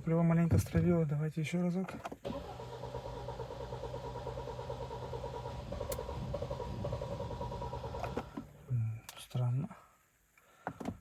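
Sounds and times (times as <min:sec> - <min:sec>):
starter motor cranking engine: 0:02.2 - 0:08.6.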